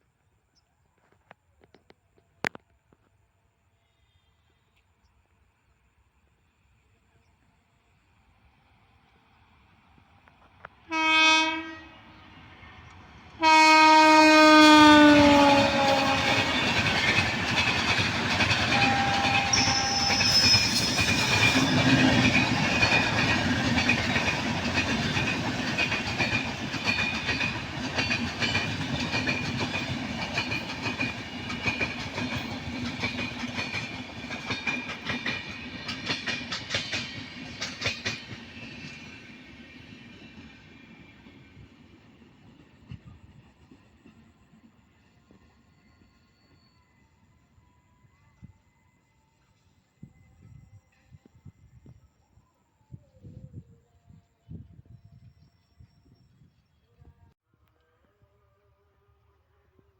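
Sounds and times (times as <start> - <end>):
train rumble and wheel clatter: 8.4 - 47.4
locomotive horn blasts: 10.9 - 12.0, 13.4 - 16.8, 18.6 - 20.7
rail-joint clicks: 15.7 - 39.2.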